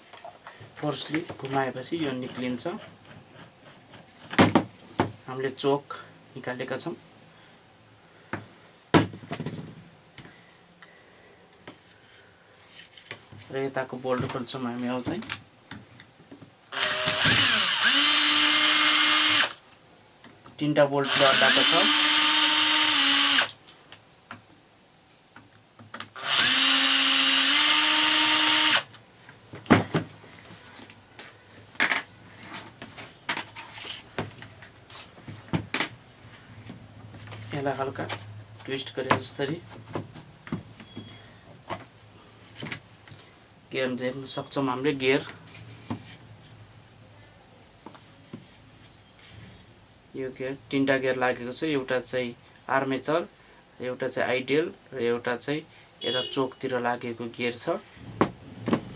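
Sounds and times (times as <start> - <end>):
drill parts clicking: 16.7 - 19.6, 21.0 - 23.6, 25.9 - 29.0.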